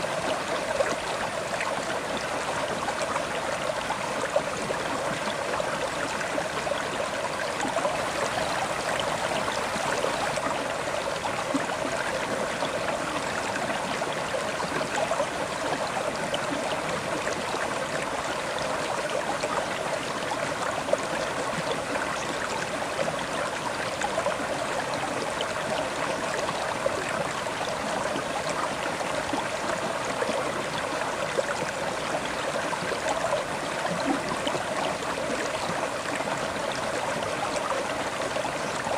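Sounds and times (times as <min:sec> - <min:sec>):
river water flowing and babbling: 0:00.0 - 0:38.9.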